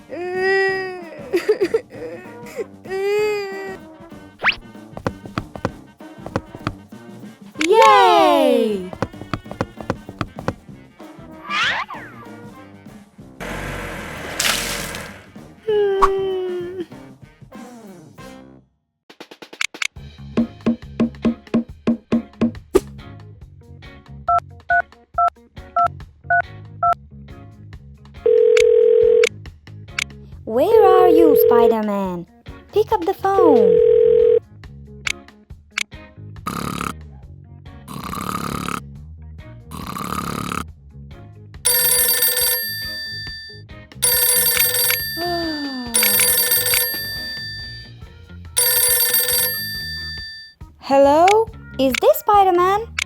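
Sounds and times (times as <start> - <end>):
phone ringback tone: 4.5 - 5.7, 6.3 - 6.8, 8.7 - 10.6, 28.3 - 29.3, 30.7 - 32.1, 33.4 - 34.4, 41.7 - 48.0, 48.6 - 50.5
touch-tone keypad beeps: 5.0 - 5.7, 6.3 - 6.8, 8.9 - 10.5, 30.8 - 32.0, 41.7 - 47.9, 48.6 - 50.5.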